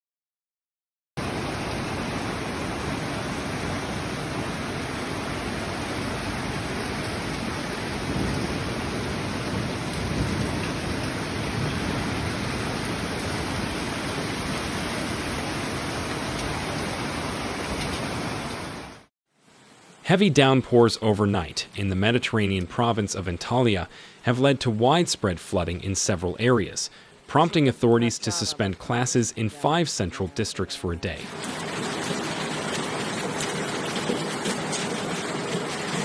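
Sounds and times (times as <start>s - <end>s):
heavy rain falling: 1.2s - 20.0s, 31.1s - 36.0s.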